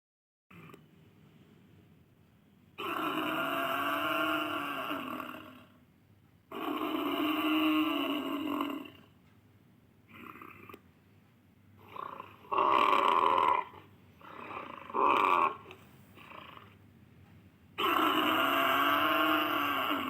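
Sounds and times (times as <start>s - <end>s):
animal grunting calls: 2.8s - 5.8s, 6.5s - 9.1s, 10.1s - 10.8s, 11.8s - 16.8s, 17.8s - 20.0s.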